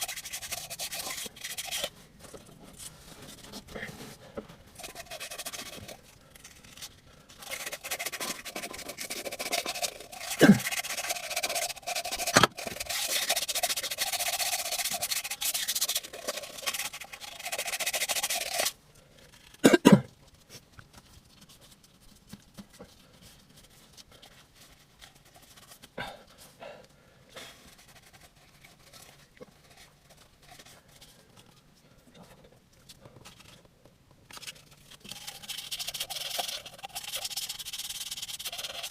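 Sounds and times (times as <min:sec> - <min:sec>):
intermittent scratching: 0:00.0 - 0:26.5, 0:27.4 - 0:33.7, 0:34.3 - 0:38.9
scrubbing on hard surface: 0:07.4 - 0:18.7.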